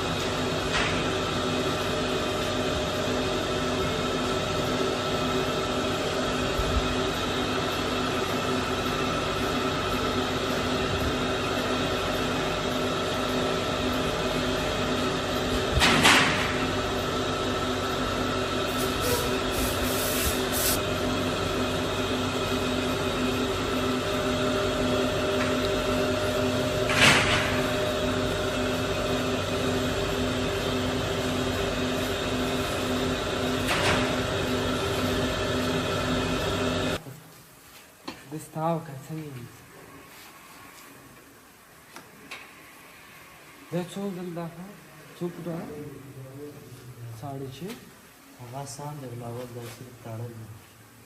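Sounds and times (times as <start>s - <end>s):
factory machinery humming: 0.0s - 37.0s.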